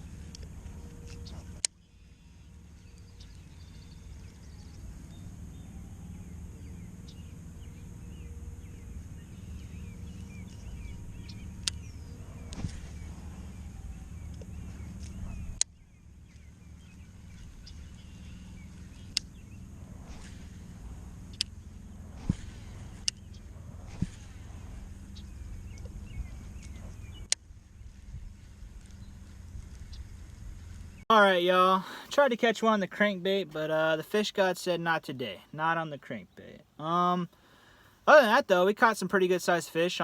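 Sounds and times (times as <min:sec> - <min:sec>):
small birds chirping: 0:00.0 - 0:40.0
low rumble: 0:02.2 - 0:31.1
sharp clicks: 0:21.3 - 0:21.6.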